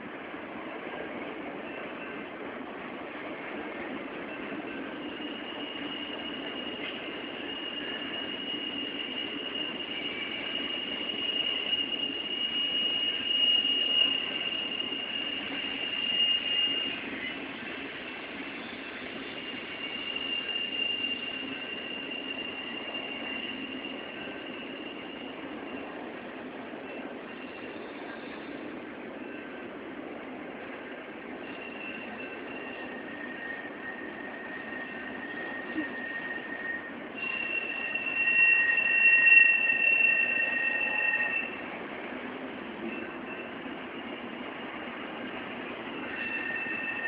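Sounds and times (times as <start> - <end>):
train wheels rolling on rails: 0.0 - 47.0
metal wheel squeal: 4.4 - 26.1, 31.4 - 41.6, 42.8 - 47.0.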